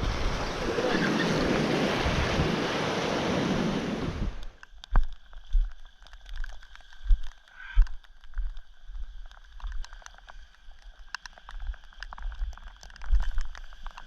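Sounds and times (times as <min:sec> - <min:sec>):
wind thumping on microphone: 0:00.0 - 0:05.6
rain ticking near microphone: 0:04.3 - 0:14.0.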